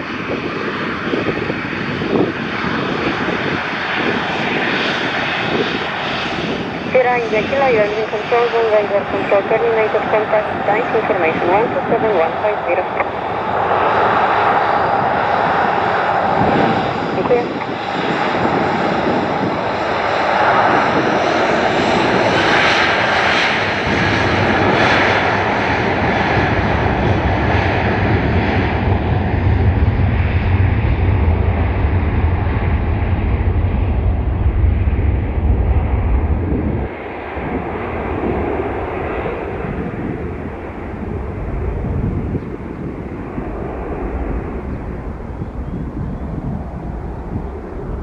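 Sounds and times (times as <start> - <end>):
aircraft engines passing: 0.0 - 48.0.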